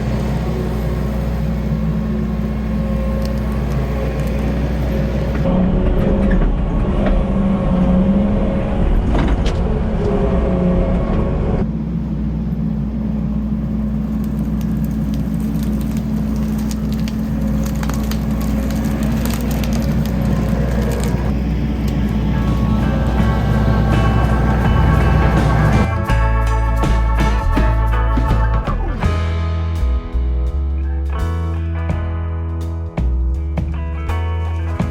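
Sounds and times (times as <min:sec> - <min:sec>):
diesel engine under load: 0:00.0 - 0:31.3
wood cracking and snapping: 0:14.1 - 0:22.0.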